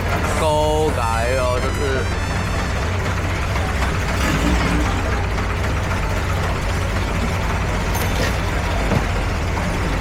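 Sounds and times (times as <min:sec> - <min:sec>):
boat engines rumbling: 0:00.0 - 0:10.0.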